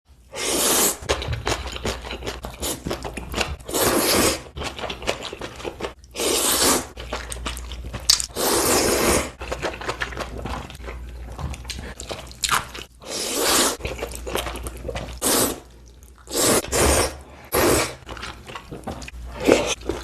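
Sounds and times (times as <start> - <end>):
person slurping noodles: 0.3 - 1.1, 3.6 - 4.5, 6.1 - 7.0, 8.3 - 9.4, 13.0 - 13.8, 15.1 - 15.7, 16.3 - 18.0, 19.3 - 19.8.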